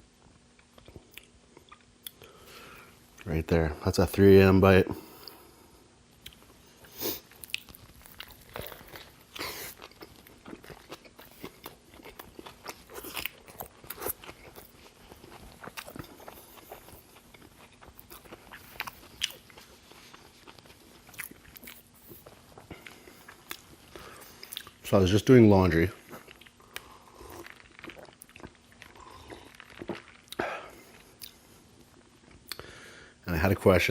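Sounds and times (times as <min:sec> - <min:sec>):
person chewing with wet mouth clicks: 0:00.6 - 0:02.3, 0:06.2 - 0:06.4, 0:07.3 - 0:24.8, 0:26.0 - 0:31.4, 0:32.3 - 0:32.7.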